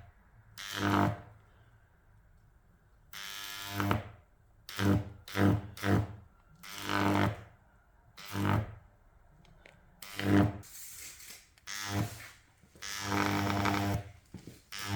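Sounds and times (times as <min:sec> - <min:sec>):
high-voltage arc buzzing: 0:10.0 - 0:14.9.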